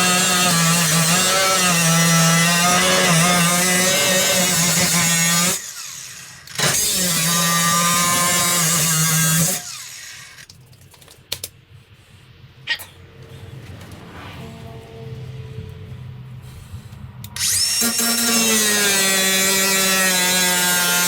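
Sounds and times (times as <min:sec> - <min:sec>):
power tool running: 0:00.0 - 0:10.4, 0:17.4 - 0:21.0.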